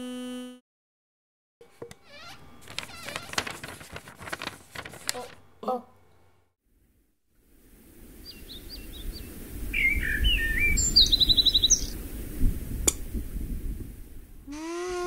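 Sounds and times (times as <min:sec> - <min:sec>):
low rumbling noise: 0:07.4 - 0:11.3
bird trill: 0:08.2 - 0:12.0
birds chirping and calling: 0:08.2 - 0:12.0.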